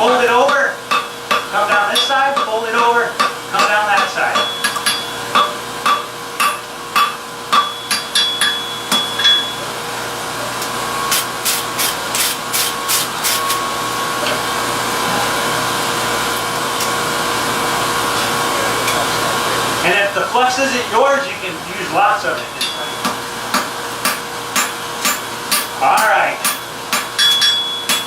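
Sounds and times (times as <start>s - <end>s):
hammer striking steel on anvil: 0.4s - 9.7s, 22.4s - 28.0s.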